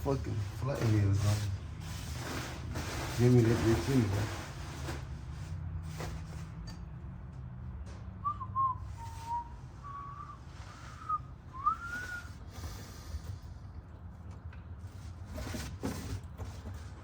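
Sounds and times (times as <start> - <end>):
person whistling a tune: 8.2 - 12.4.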